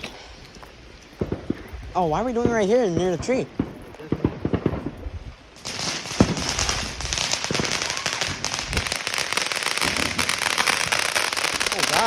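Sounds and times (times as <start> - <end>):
fireworks crackling: 0.0 - 12.0
firework bang: 5.6 - 12.0.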